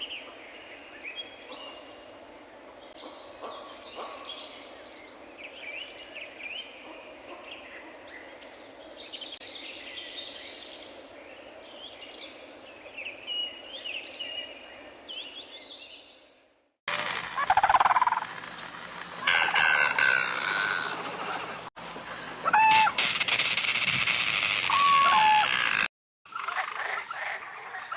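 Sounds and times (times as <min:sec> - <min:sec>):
birds chirping and twittering: 0:00.0 - 0:16.4
background hiss: 0:00.0 - 0:16.6.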